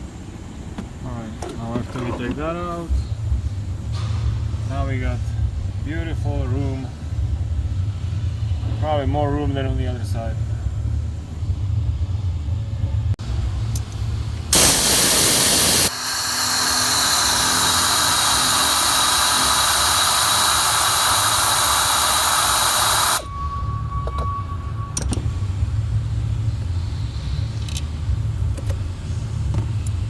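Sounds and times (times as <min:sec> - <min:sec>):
loud steady hiss: 0:14.6 - 0:23.3
faint high whistle: 0:14.6 - 0:25.6.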